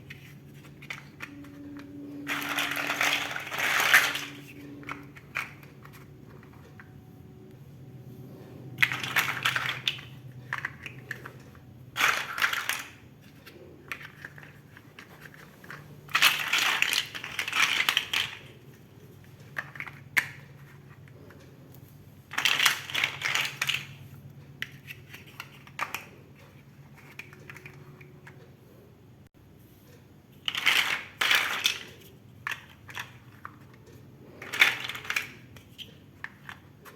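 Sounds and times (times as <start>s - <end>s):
plastic bricks clicking and rattling: 0.0s - 6.9s, 8.7s - 21.5s, 22.3s - 28.4s, 30.4s - 36.9s.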